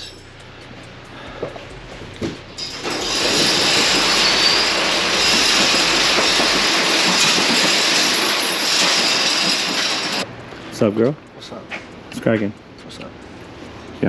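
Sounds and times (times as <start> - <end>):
loud rushing hiss: 2.6 - 10.2.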